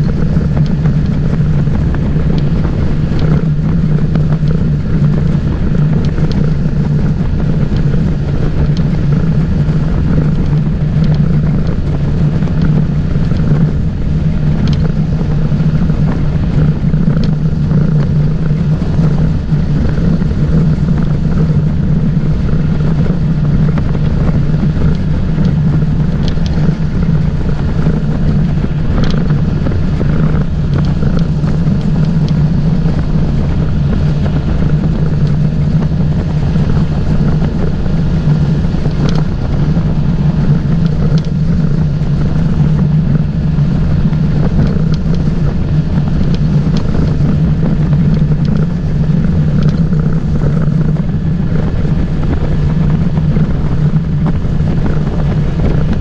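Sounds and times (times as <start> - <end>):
motorboat engine running: 0.0 - 56.0
wind buffeting microphone: 0.0 - 56.0.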